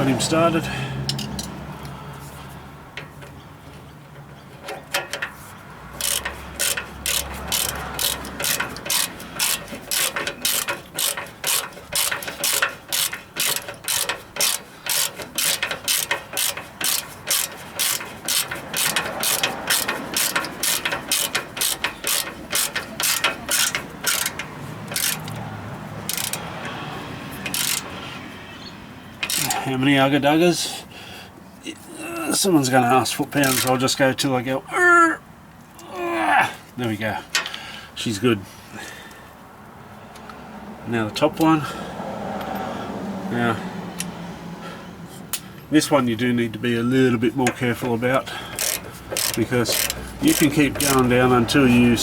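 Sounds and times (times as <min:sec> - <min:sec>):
hand ratchet clicking: 0:06.0 - 0:26.8, 0:27.4 - 0:28.0, 0:29.1 - 0:29.6, 0:33.4 - 0:33.8, 0:47.4 - 0:52.0.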